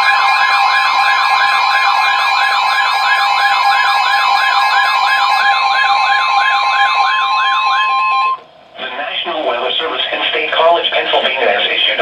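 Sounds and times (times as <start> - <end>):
fast warbling siren: 0.0 - 8.4
steady alarm tones: 0.0 - 8.4.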